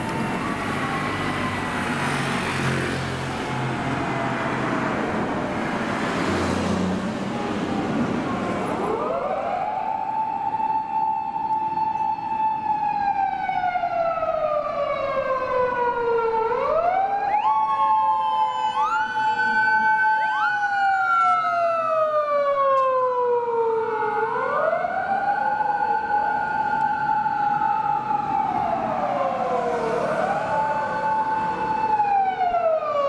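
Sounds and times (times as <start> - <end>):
police siren wailing: 0.0 - 33.0
second siren wail: 0.0 - 33.0.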